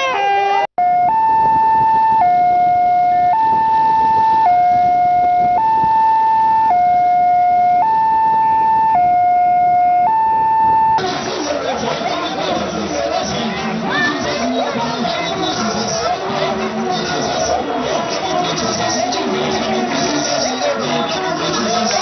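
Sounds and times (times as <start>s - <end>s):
two-tone vehicle siren: 0.0s - 11.1s.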